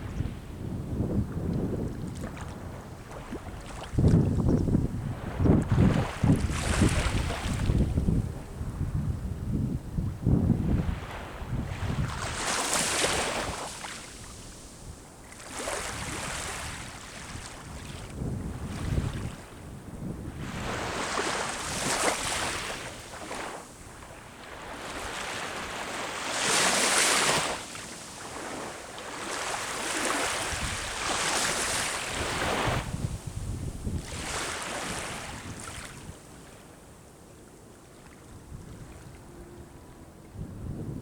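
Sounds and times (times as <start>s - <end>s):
sea waves breaking on shore: 1.8s - 8.4s, 10.7s - 36.8s.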